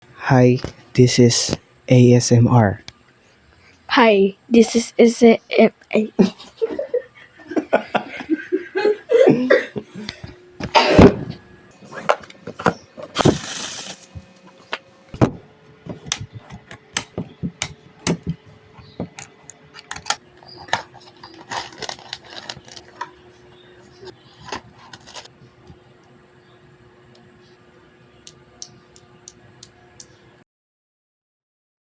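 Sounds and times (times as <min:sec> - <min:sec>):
packaging rustle: 0:11.8 - 0:14.4, 0:21.4 - 0:23.0.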